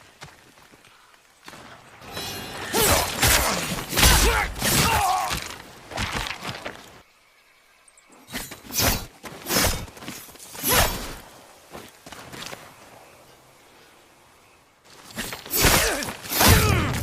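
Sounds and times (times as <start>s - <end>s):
steel blades clashing and scraping: 2.0s - 4.9s.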